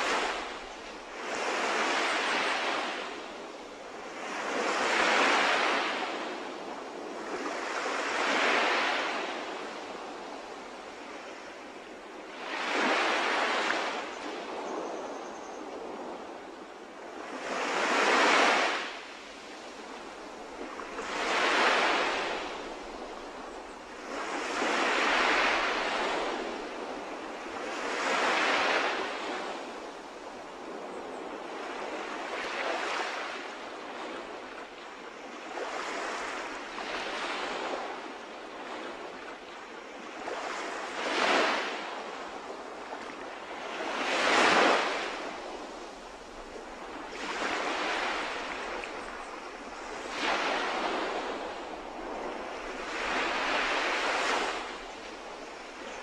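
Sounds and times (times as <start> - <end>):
sea waves breaking on shore: 0.0 - 56.0.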